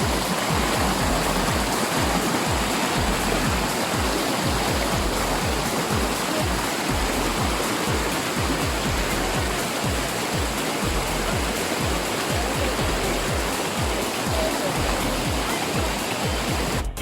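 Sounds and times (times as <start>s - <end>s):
river rushing over rocks: 0.0s - 16.8s
low rumbling: 0.9s - 1.8s, 2.9s - 3.6s, 4.8s - 5.4s, 6.9s - 7.4s.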